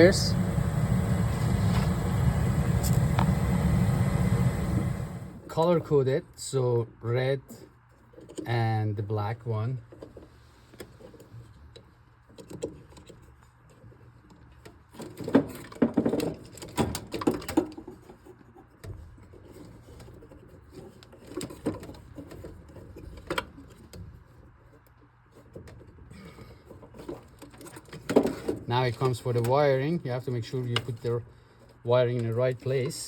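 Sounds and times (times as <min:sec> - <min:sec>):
faint low hum: 0:00.0 - 0:10.1.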